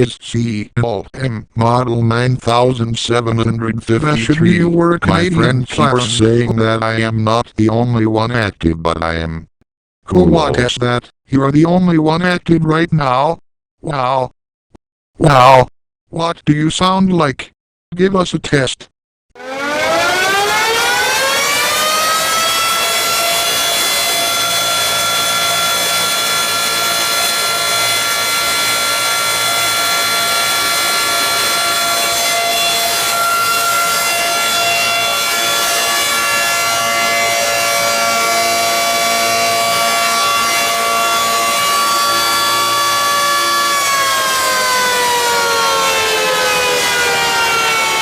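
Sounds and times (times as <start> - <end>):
civil defense siren: 19.4 - 48.0.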